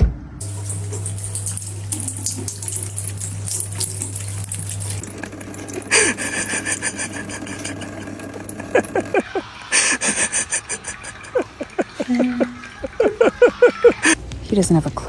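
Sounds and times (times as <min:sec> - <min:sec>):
running water splashing: 0:00.4 - 0:09.4.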